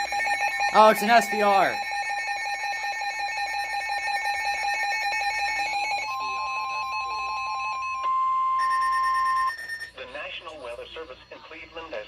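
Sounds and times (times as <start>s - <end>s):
steady warning alarm tone: 0.0s - 10.0s
weather radios alarm beeps: 0.6s - 1.9s.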